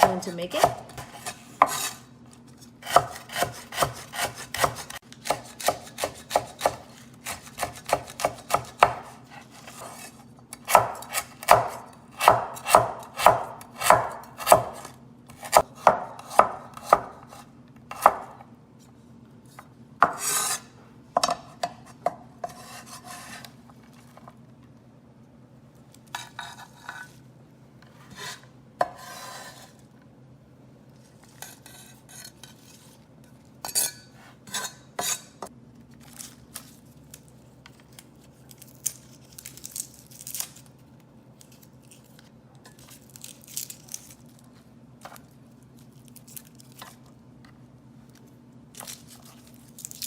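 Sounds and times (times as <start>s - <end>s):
kitchen utensils clinking and scraping: 33.6s - 35.4s.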